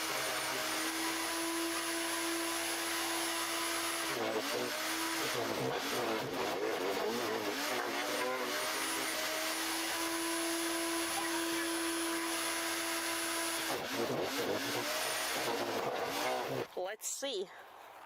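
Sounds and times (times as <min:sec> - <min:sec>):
garden shredder motor running: 0:00.0 - 0:16.8.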